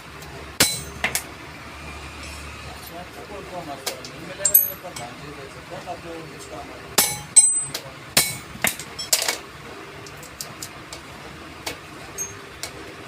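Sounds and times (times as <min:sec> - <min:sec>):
hammer tapping metal: 0:00.6 - 0:01.2, 0:04.4 - 0:05.1, 0:07.0 - 0:09.2.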